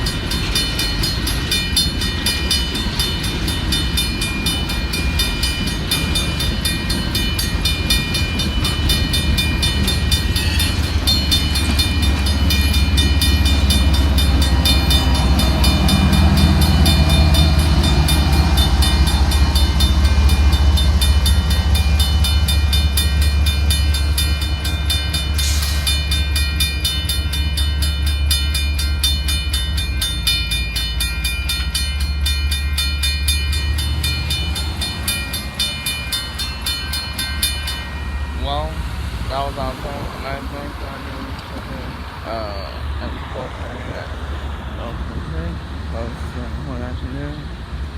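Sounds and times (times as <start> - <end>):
high ringing tones: 0.0 - 43.8
train cars rumbling on rails: 0.0 - 47.9
brief hiss-like burst: 25.4 - 26.0.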